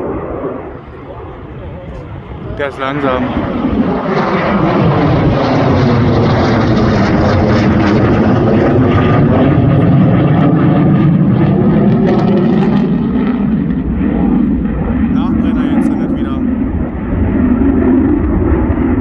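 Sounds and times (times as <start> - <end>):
jet aircraft flying past: 0.0 - 19.0.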